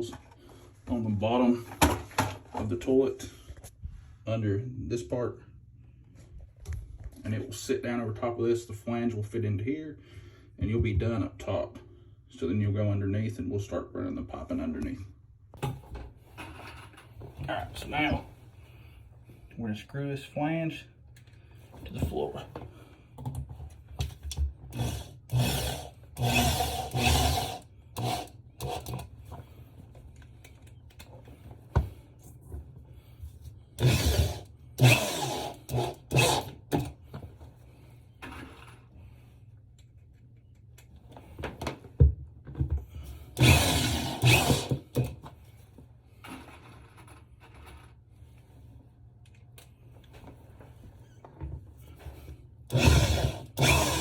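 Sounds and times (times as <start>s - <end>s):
power drill driving screws: 24.7s - 29.0s, 33.8s - 36.9s, 43.4s - 45.1s, 52.7s - 54.0s.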